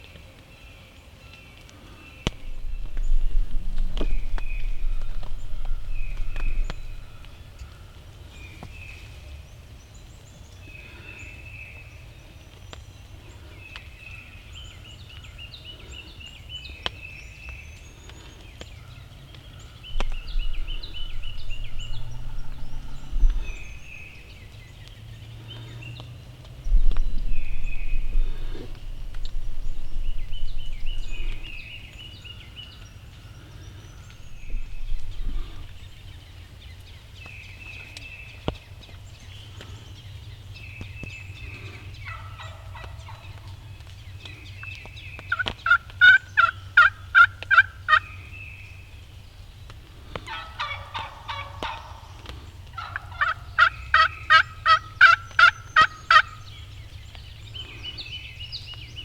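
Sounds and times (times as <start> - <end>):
turkey yelping: 42.0 - 43.3, 45.3 - 48.1, 50.3 - 56.4
turkey gobbling: 42.0 - 43.6, 45.3 - 48.2, 50.2 - 56.4.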